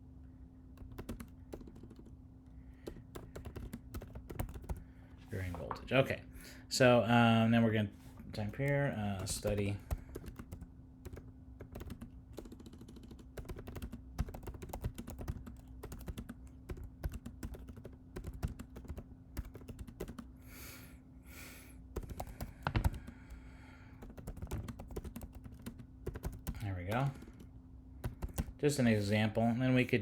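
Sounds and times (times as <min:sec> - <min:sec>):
faint steady hum: 0:00.0 - 0:30.0
typing on keyboard: 0:00.8 - 0:04.8, 0:08.4 - 0:20.3, 0:22.0 - 0:23.4, 0:24.0 - 0:28.6.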